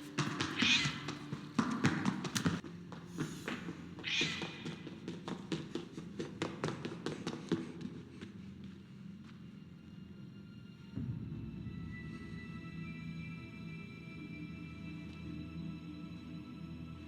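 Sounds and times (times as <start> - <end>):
cat crying out: 0.5 - 1.2, 4.0 - 4.8.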